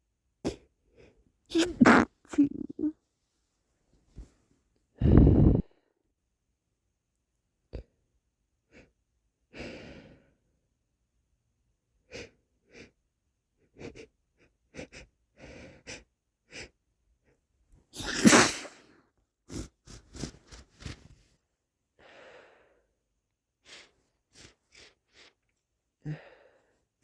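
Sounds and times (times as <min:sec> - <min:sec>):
person sneezing: 0:01.5 - 0:02.9, 0:18.0 - 0:18.9
person sniffling: 0:18.0 - 0:18.9, 0:19.5 - 0:21.1.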